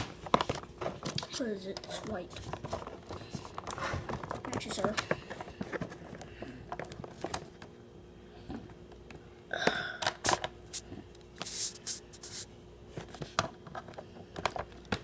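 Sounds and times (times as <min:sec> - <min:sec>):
packaging being handled: 0:11.4 - 0:12.5.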